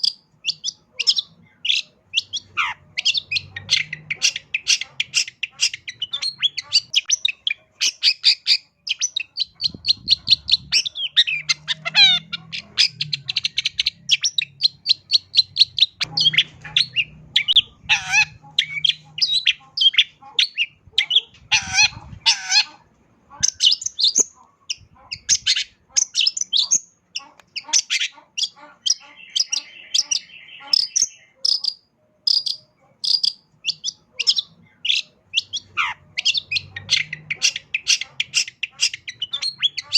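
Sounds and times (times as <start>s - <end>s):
bird singing chirps and trills: 0.0s - 22.7s, 23.4s - 39.9s
buzzy bird chatter: 0.0s - 39.9s.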